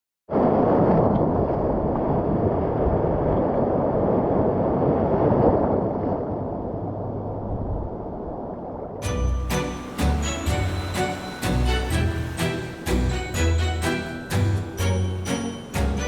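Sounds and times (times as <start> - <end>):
wind: 0.3 - 16.0
waves washing on beach: 9.0 - 16.0.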